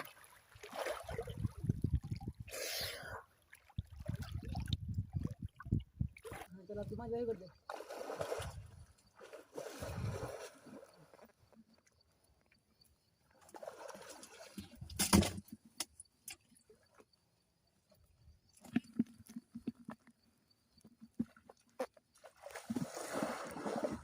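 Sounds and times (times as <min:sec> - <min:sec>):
muddy water sloshing: 0:00.0 - 0:02.6, 0:03.3 - 0:11.9, 0:13.3 - 0:17.0, 0:21.1 - 0:24.0.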